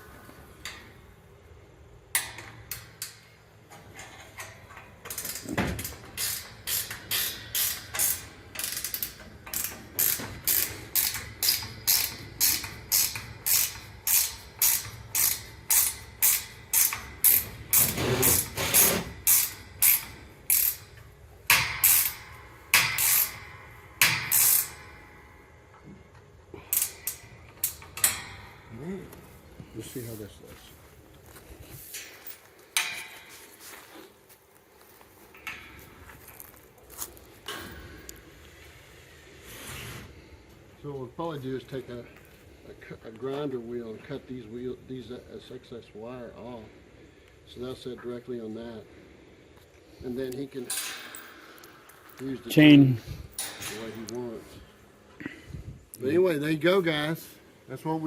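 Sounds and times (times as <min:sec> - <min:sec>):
ratchet clicking: 0:04.4 - 0:25.3, 0:26.7 - 0:28.4.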